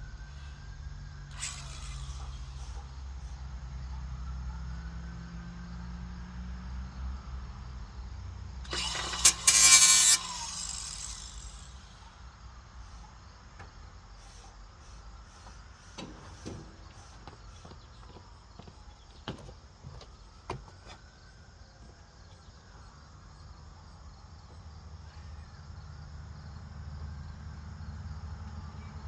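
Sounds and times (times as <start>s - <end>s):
motor humming: 1.3s - 3.3s, 8.7s - 12.1s
loud hissing burst: 8.7s - 12.0s.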